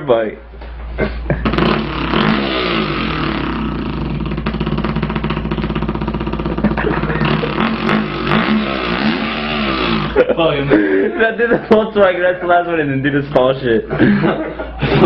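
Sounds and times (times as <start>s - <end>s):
person imitating engine with mouth: 1.0s - 10.2s.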